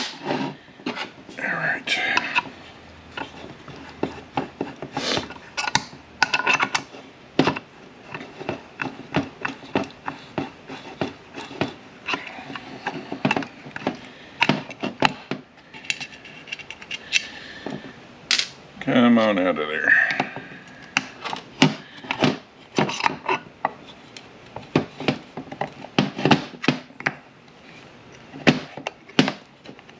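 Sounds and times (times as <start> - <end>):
tools clicking and scraping on metal: 2.0 - 17.3.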